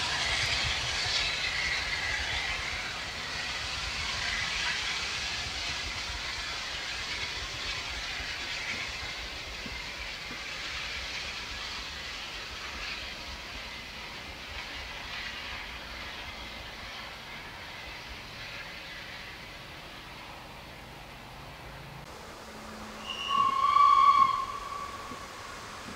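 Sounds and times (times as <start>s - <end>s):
steam train running: 0.0s - 25.9s.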